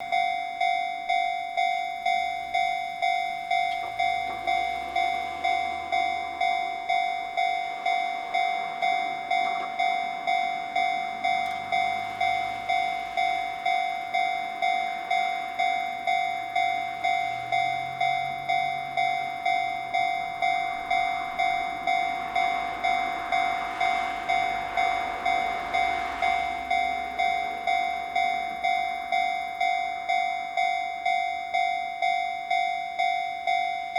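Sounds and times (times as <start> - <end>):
electric train passing: 0.0 - 33.9
level crossing alarm dinging: 0.0 - 33.9.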